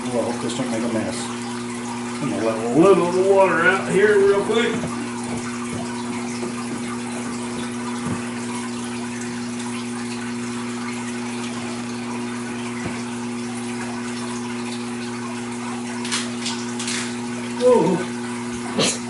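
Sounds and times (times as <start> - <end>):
water rushing out: 0.1 - 19.0.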